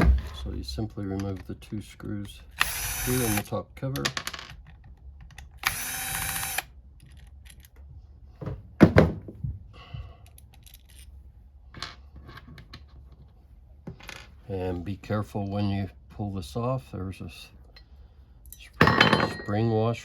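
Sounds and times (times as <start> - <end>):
small parts clicking: 2.5 - 7.8, 10.2 - 11.1
cordless screwdriver whirring: 2.6 - 3.4, 5.6 - 6.7.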